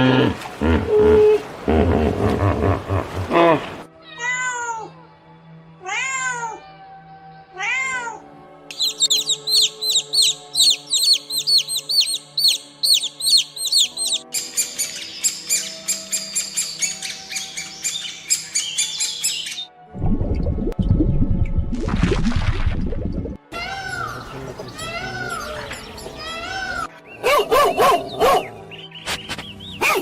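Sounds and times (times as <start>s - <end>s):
soft background music: 0.0s - 30.0s
harsh bird squawking: 8.7s - 14.2s.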